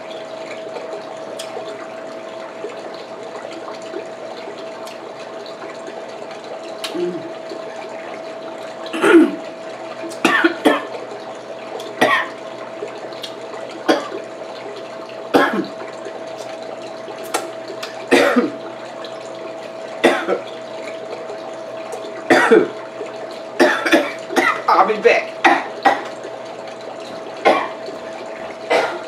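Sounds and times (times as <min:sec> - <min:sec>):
steady hum: 0:00.0 - 0:29.0
woman coughing: 0:09.0 - 0:09.4, 0:15.4 - 0:15.6, 0:18.1 - 0:18.5, 0:22.3 - 0:22.7, 0:28.7 - 0:29.0.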